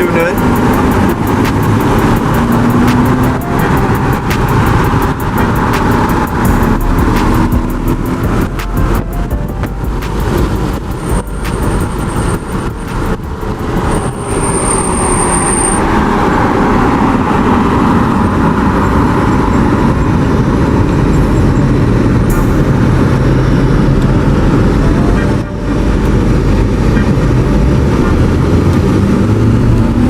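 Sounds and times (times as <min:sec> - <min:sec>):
vehicle and road noise: 0:00.0 - 0:30.0
scattered clicks and knocks: 0:00.3 - 0:15.0.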